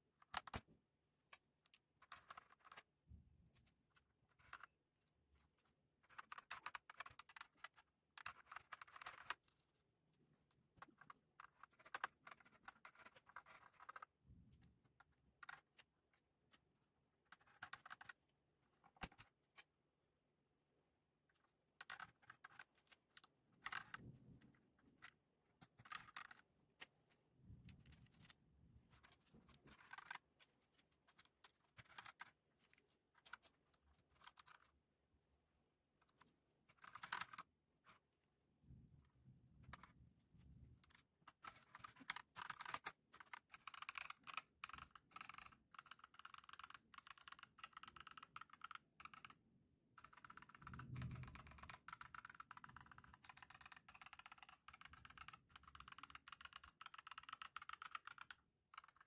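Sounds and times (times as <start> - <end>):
typing on mechanical keyboard: 6.1 - 9.4, 41.4 - 49.4, 50.0 - 59.0.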